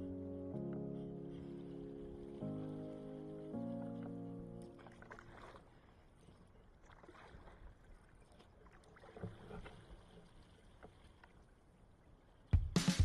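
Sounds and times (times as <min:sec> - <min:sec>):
paddle splashing in water: 0:00.6 - 0:12.5.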